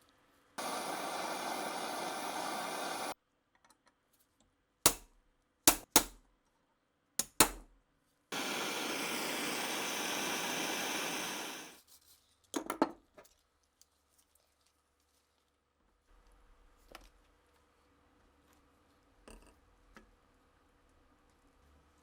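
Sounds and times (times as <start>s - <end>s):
steady hiss: 0.6s - 3.2s, 8.4s - 11.8s.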